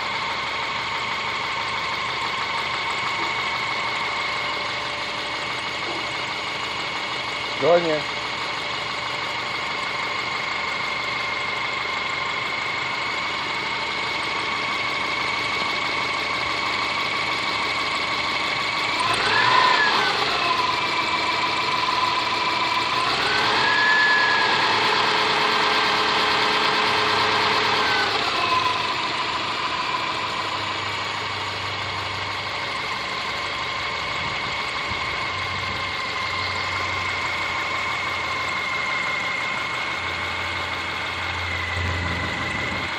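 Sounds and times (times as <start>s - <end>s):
car engine idling with knock: 0.0s - 23.7s, 24.4s - 42.9s
engine revving: 17.4s - 42.9s.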